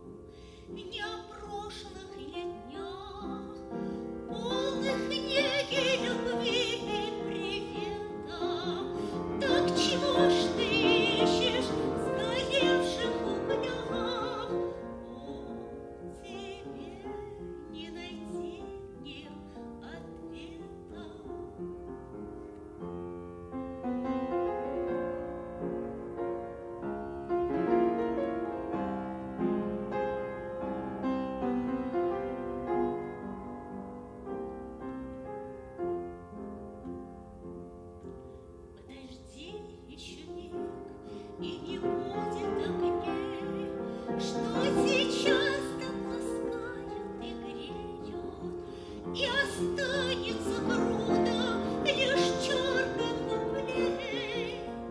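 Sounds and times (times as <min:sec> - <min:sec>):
classical piano music: 0:00.0 - 0:54.9
woman singing: 0:00.7 - 0:21.8, 0:38.3 - 0:54.9.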